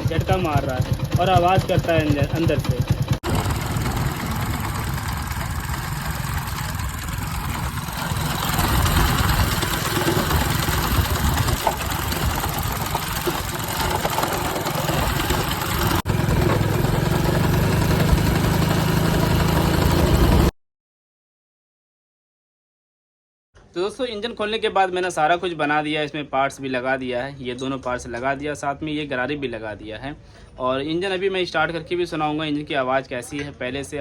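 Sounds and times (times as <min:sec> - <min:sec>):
motorcycle engine running: 0:00.0 - 0:20.5
gearbox rattling: 0:02.3 - 0:16.7.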